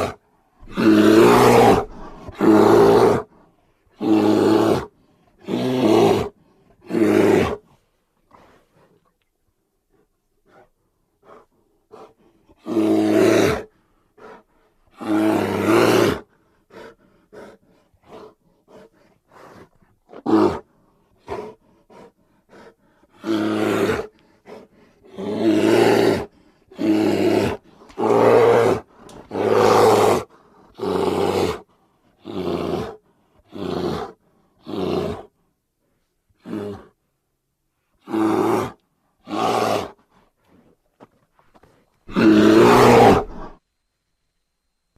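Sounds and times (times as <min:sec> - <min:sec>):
bear roaring and growling: 0:00.0 - 0:07.7, 0:11.2 - 0:35.3, 0:38.0 - 0:40.0, 0:42.1 - 0:43.6.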